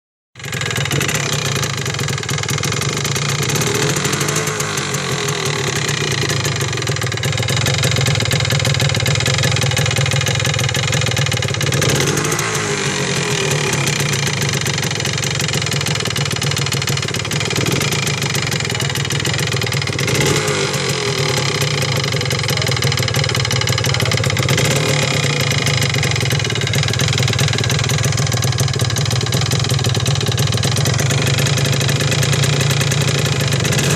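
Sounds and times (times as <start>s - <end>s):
motorcycle engine revving: 0.4s - 33.9s.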